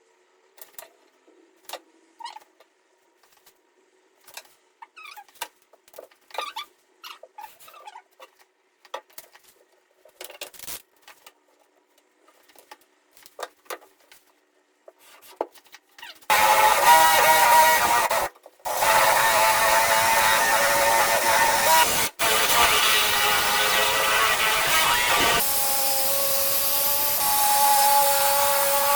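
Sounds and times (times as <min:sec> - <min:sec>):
power tool running: 0:16.3 - 0:28.9.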